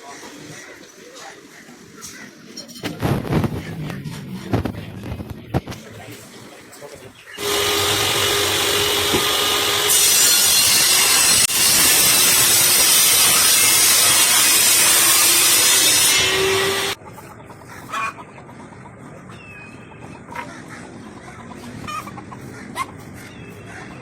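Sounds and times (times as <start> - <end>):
power tool cutting wood: 7.4 - 17.0.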